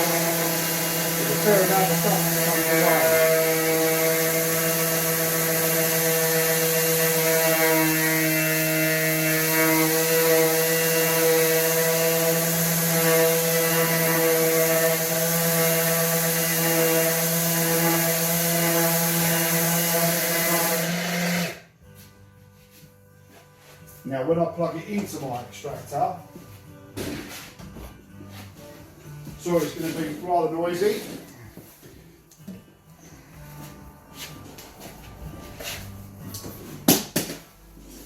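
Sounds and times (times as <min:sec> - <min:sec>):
orbital sander running: 0:00.0 - 0:21.6.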